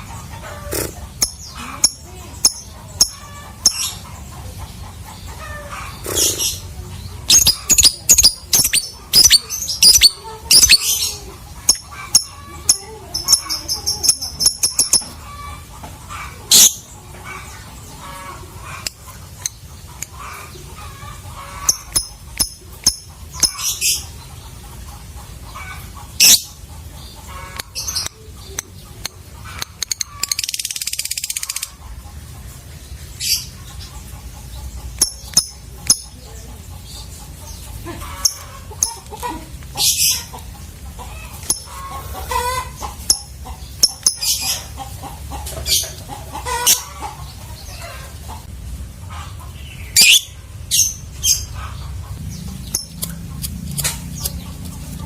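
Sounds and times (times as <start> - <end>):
birds chirping and shrieking: 0.0 - 55.0
bird chattering trill: 0.6 - 4.2, 4.9 - 15.6, 18.7 - 24.2, 27.3 - 31.9, 34.8 - 36.3, 41.2 - 44.8, 49.8 - 51.7.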